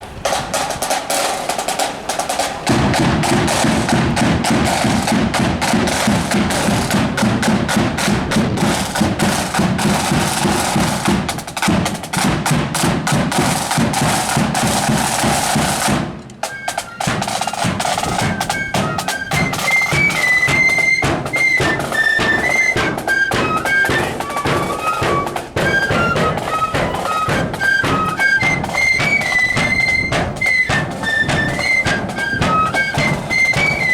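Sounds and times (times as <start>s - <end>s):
snare drums rolling: 0.0s - 33.9s
flutes playing high melody: 16.4s - 33.9s.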